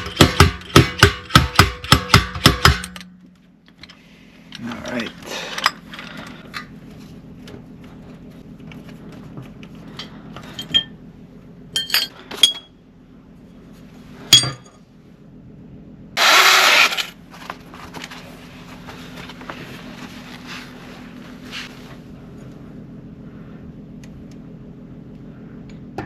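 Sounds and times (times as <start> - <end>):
faint steady hum: 0.0 - 26.0
metal tools clinking: 10.0 - 11.0, 11.7 - 12.7
loud noisy burst: 16.2 - 17.1.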